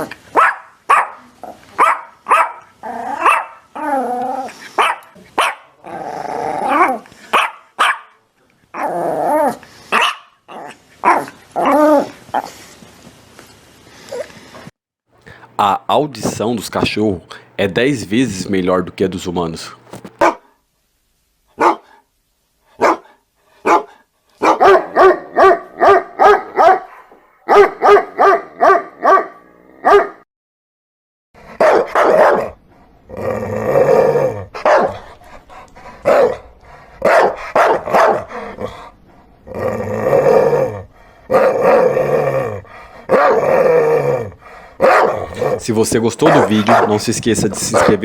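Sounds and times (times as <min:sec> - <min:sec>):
dogs barking: 0:00.0 - 0:03.8, 0:04.8 - 0:05.8, 0:06.7 - 0:08.2, 0:09.9 - 0:10.4, 0:11.0 - 0:12.5, 0:20.2 - 0:20.5, 0:21.6 - 0:22.0, 0:22.8 - 0:30.2, 0:31.5 - 0:32.6, 0:34.6 - 0:35.1, 0:36.0 - 0:38.6, 0:44.8 - 0:48.0
dog growling: 0:02.5 - 0:07.3, 0:08.8 - 0:12.6, 0:31.4 - 0:48.0.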